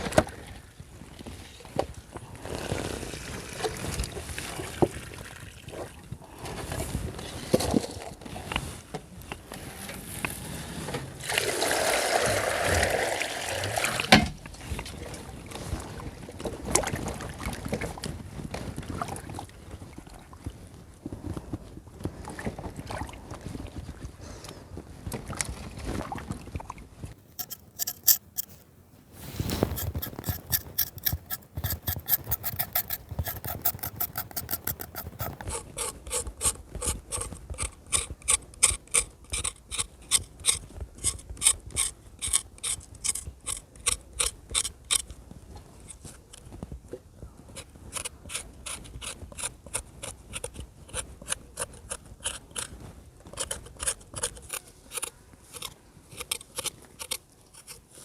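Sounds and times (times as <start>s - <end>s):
hand tool scraping potatoes: 27.2s - 36.2s.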